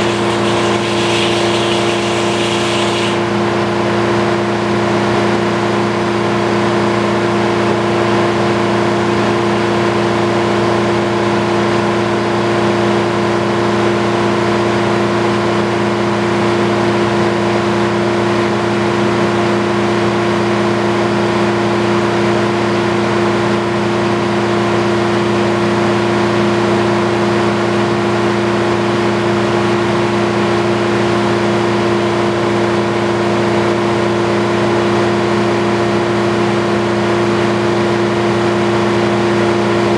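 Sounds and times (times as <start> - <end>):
sawmill engine droning: 0.0 - 6.0.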